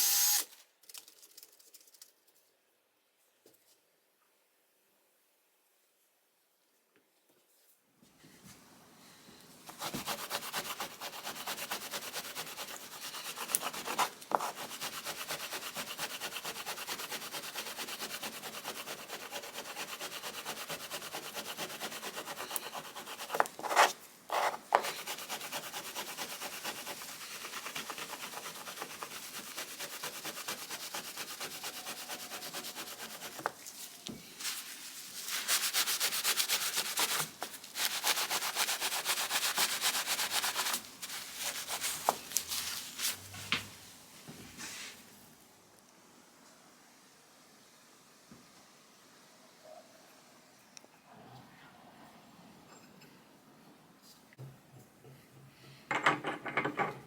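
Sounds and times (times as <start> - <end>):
sandpaper rubbing on wood: 9.8 - 33.5, 35.2 - 43.3.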